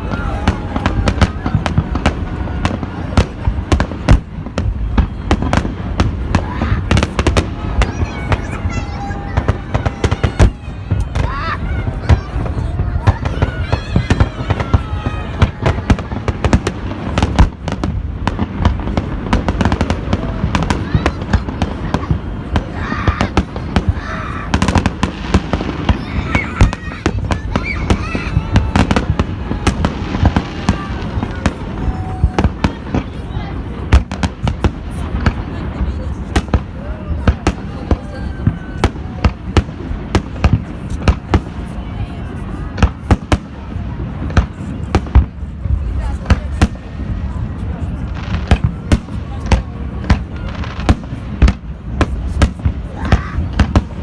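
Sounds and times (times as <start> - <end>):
fireworks bangs: 0.0 - 54.0.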